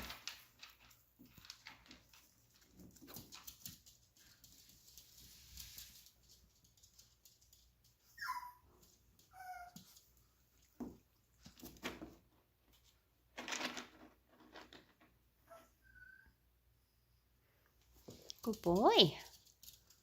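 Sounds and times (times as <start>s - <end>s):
puppies scuffling rustles: 0.0s - 12.9s
puppy squeaks: 8.1s - 8.6s, 9.3s - 9.8s, 15.5s - 16.4s.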